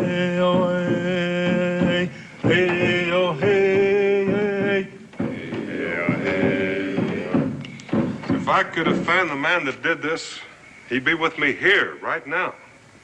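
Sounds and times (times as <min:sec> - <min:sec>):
men chanting long held notes: 0:00.0 - 0:07.6.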